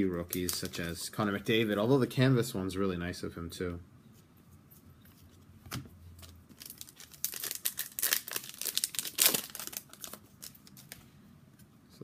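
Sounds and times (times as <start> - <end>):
foil wrapper tearing and crinkling: 0.2 - 1.0, 6.2 - 11.0.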